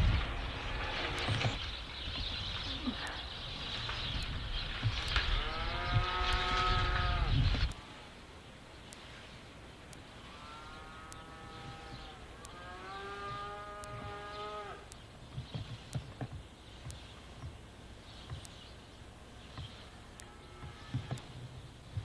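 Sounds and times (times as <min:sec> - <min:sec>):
cattle mooing: 0:05.4 - 0:08.1, 0:10.3 - 0:14.9, 0:19.8 - 0:21.2
dull low thumps: 0:20.6 - 0:22.0.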